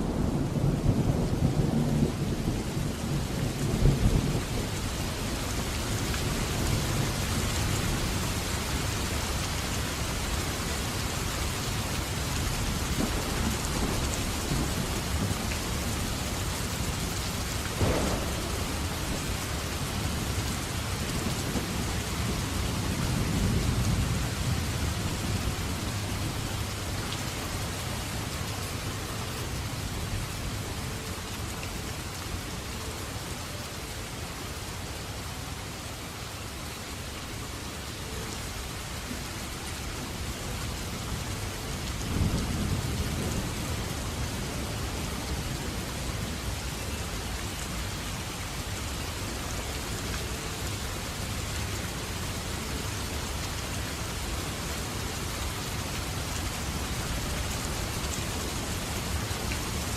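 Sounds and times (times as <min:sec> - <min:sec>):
low thunder rumbling: 0:00.0 - 0:08.2, 0:12.5 - 0:26.8, 0:41.9 - 0:44.5
heavy rain: 0:00.0 - 0:59.9.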